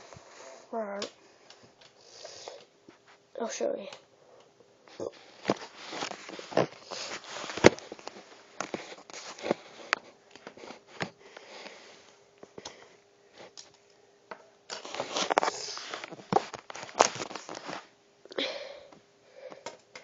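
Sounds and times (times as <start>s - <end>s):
plastic pieces rustling: 14.7s - 17.9s.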